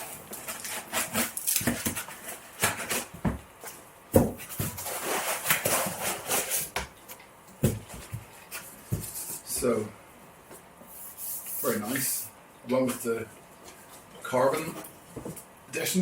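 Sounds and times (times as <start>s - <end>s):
knocks and handling noise: 0.0s - 9.6s
foam packing squeaking: 4.3s - 6.7s.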